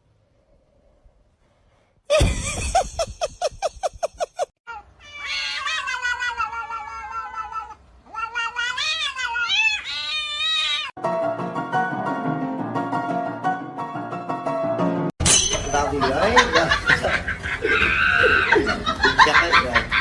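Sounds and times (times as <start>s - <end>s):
cat yowling: 4.7s - 10.9s.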